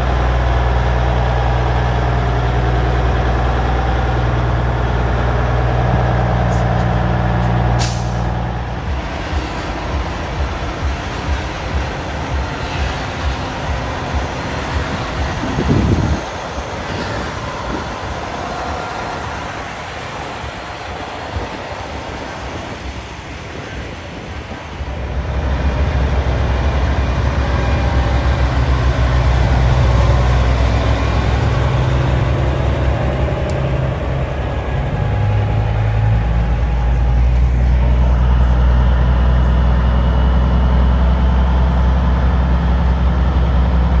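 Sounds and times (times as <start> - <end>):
truck engines running: 0.0 - 44.0
air brake hiss: 6.5 - 8.5.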